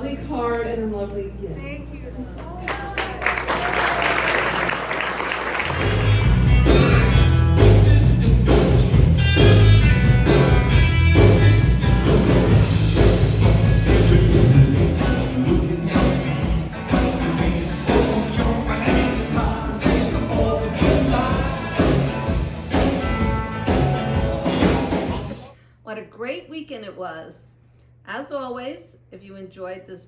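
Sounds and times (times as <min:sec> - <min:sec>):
rock and roll music with singing: 0:05.8 - 0:25.5.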